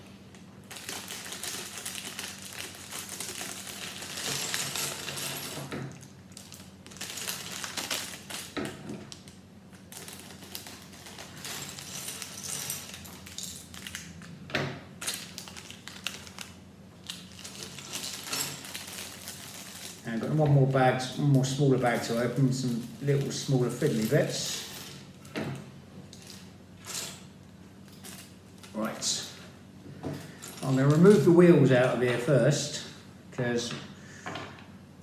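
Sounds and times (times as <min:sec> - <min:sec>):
plastic bags tearing and crinkling: 0:00.6 - 0:14.2, 0:15.0 - 0:25.1, 0:27.8 - 0:29.3.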